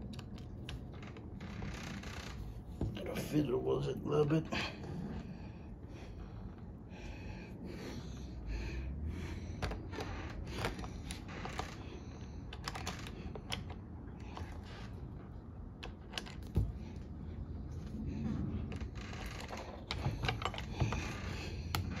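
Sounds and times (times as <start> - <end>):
lock parts clicking and scraping: 9.6 - 17.0, 18.6 - 22.0.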